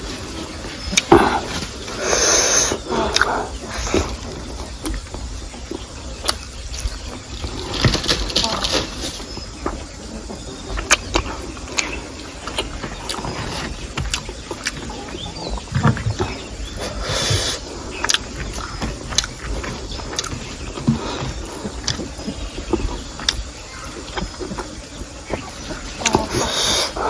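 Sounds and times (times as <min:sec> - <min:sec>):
close chewing sounds: 0:00.0 - 0:27.0.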